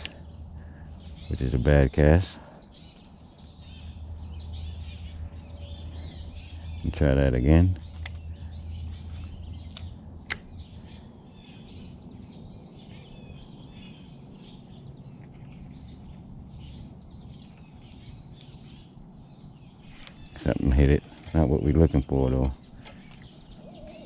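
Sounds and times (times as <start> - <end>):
sharp click: 0.0 - 0.2, 9.2 - 10.7
low outdoor rumble: 0.0 - 19.6
small birds chirping: 0.0 - 24.0.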